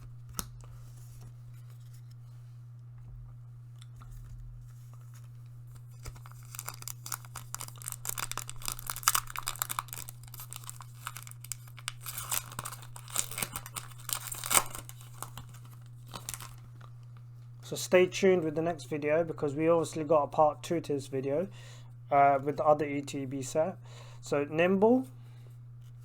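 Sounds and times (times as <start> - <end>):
steady low hum: 0.0 - 26.0
foil wrapper tearing and crinkling: 4.2 - 17.0.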